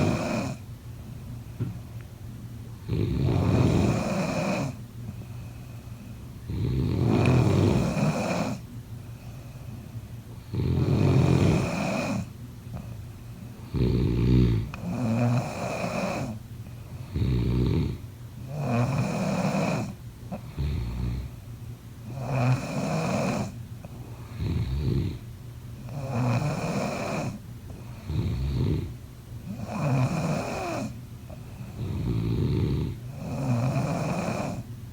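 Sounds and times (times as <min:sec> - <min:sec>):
person snoring: 0:00.0 - 0:00.6, 0:02.9 - 0:04.8, 0:06.5 - 0:08.6, 0:10.5 - 0:12.3, 0:13.7 - 0:16.4.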